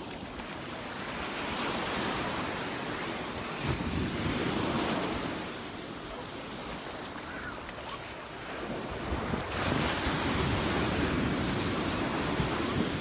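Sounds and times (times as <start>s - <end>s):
waves washing on beach: 0.0s - 13.0s
wind on microphone: 8.5s - 13.0s.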